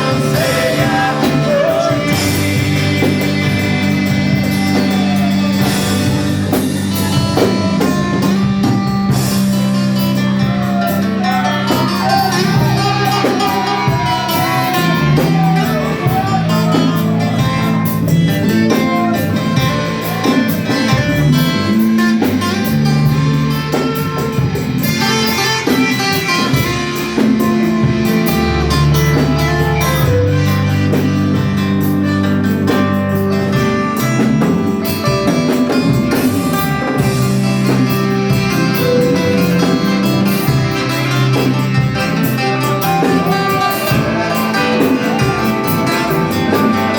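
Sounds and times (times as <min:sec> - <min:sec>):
person singing: 0:00.0 - 0:08.3, 0:10.5 - 0:21.8, 0:42.3 - 0:46.9
rock band playing: 0:00.0 - 0:46.9.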